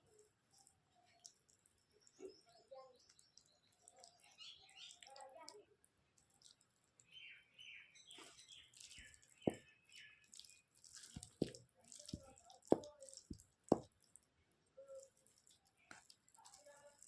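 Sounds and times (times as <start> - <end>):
wet chewing: 8.6 - 14.3, 15.0 - 17.0.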